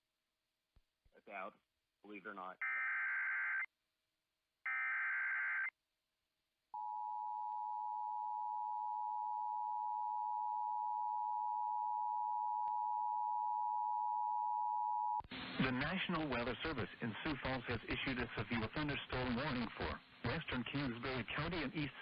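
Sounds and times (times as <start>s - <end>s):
steady warning alarm tone: 4.7s - 5.7s.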